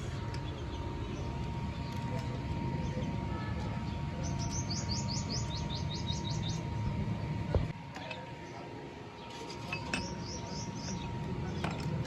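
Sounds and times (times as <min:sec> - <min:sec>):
small bird chirping: 0:04.2 - 0:06.7.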